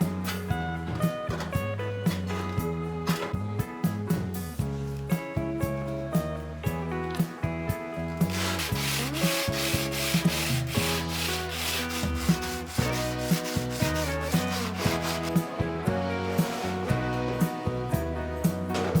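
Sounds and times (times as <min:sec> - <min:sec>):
guitar music with steady beat: 0:00.0 - 0:19.0
rough scraping by hand: 0:08.2 - 0:15.4, 0:16.3 - 0:17.0.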